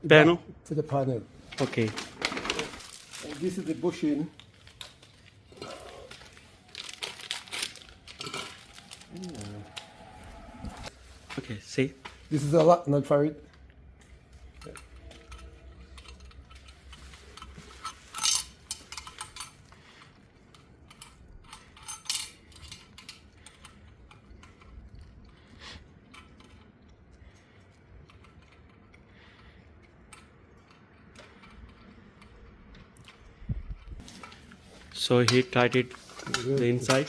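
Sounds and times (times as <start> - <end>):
small metal parts clinking: 6.1 - 9.4, 14.6 - 24.8.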